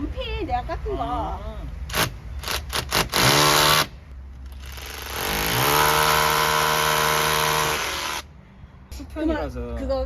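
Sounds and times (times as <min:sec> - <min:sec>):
power tool motor whining: 0:01.9 - 0:08.3.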